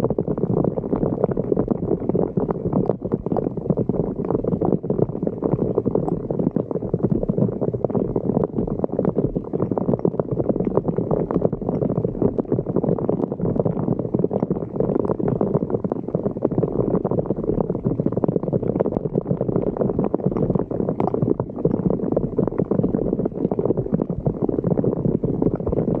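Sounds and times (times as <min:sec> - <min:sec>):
water gurgling into a drain: 0:00.0 - 0:26.0.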